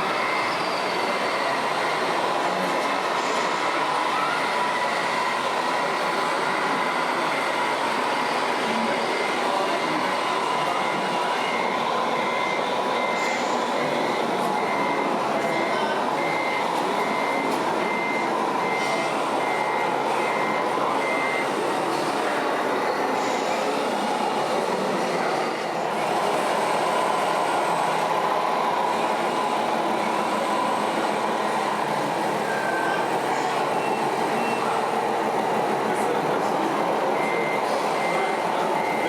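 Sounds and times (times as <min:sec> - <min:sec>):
reversing beeper: 0:08.6 - 0:21.6, 0:37.0 - 0:39.0.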